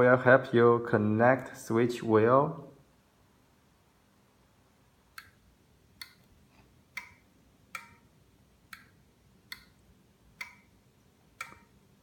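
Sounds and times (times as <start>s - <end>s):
wall switch clicking: 6.0s - 11.8s.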